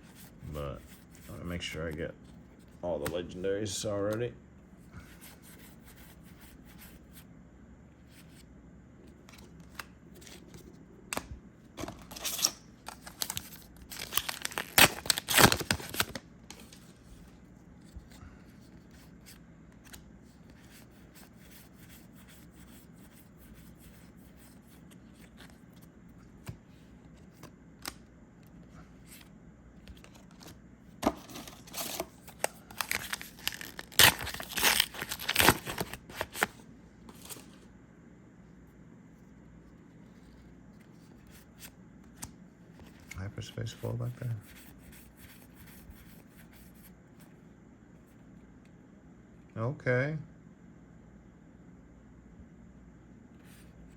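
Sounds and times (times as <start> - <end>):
foil packs torn open: 11.8 - 16.2, 31.2 - 36.5
wrappers crinkling: 12.1 - 16.2, 31.4 - 36.5.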